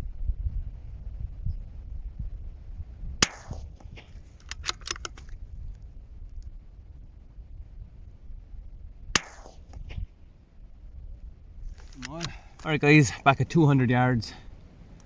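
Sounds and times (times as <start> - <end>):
low steady rumble: 0.0 - 15.0
rifle shot with echo: 3.2 - 4.2, 9.1 - 10.1
rifle bolt metallic clicks: 3.2 - 5.4, 11.8 - 12.4.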